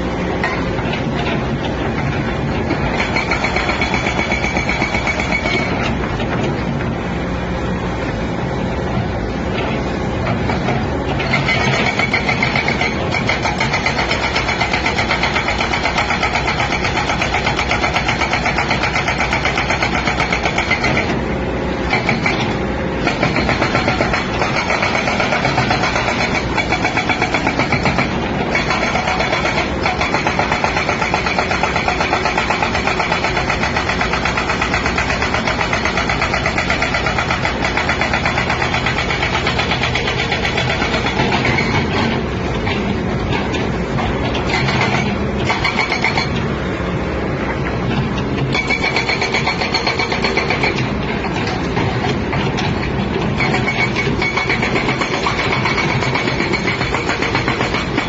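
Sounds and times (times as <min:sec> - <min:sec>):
excavator engine running: 0:00.0 - 0:58.0
hydraulic breaker hammering: 0:21.8 - 0:46.4, 0:48.4 - 0:58.0.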